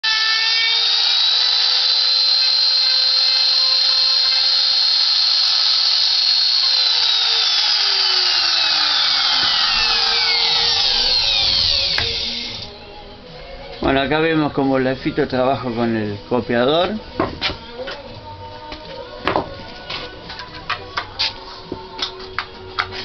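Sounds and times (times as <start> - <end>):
wood router whining: 0.0 - 12.8.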